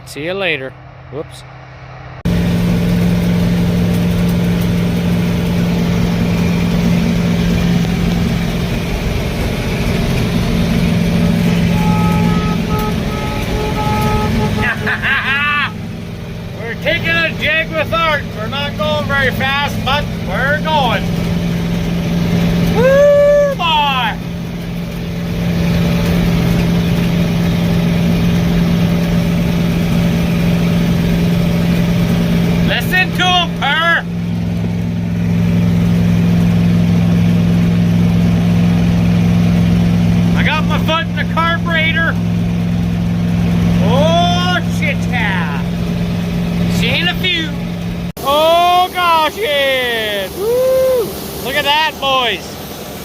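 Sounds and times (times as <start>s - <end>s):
diesel engine drone: 0.0s - 53.0s
two-tone electronic beeping: 11.6s - 14.9s.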